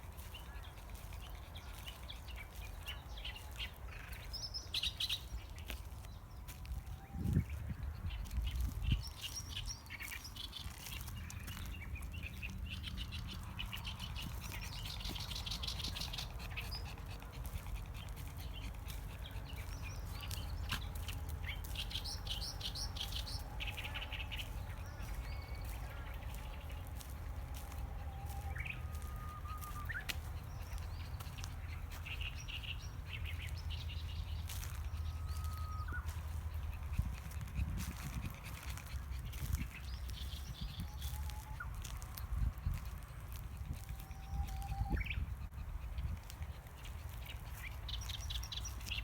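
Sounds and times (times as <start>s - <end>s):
birds singing and chirping: 0.0s - 49.0s
bush warbler whistled song: 19.5s - 36.7s, 44.0s - 45.3s.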